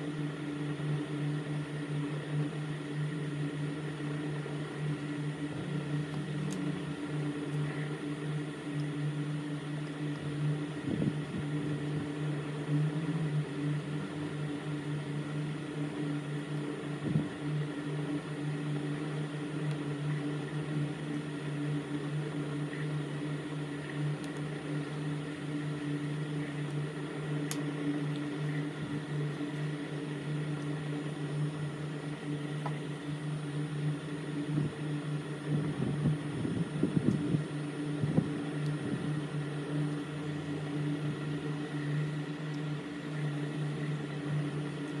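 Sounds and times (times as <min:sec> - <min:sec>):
small electric machine humming: 0:00.0 - 0:45.0.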